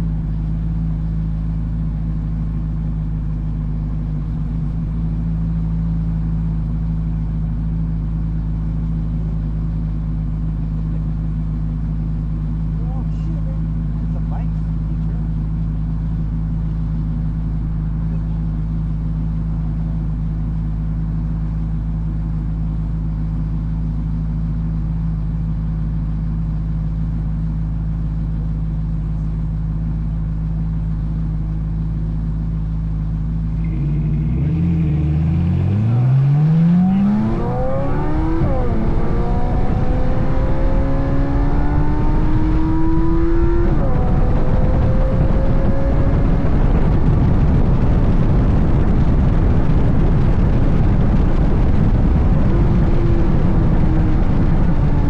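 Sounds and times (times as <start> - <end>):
car engine idling and accelerating: 0.0 - 55.0
rushing noise of speed: 33.4 - 55.0.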